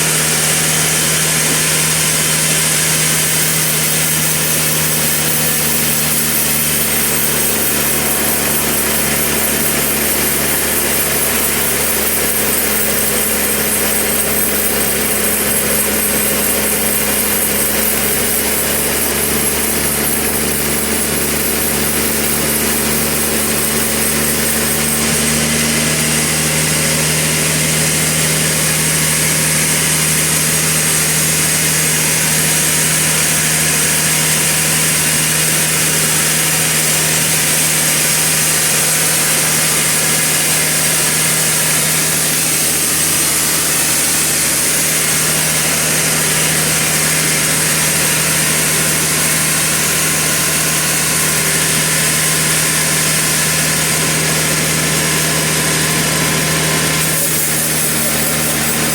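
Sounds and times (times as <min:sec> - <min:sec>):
saw noise: 0:00.0 - 0:58.9.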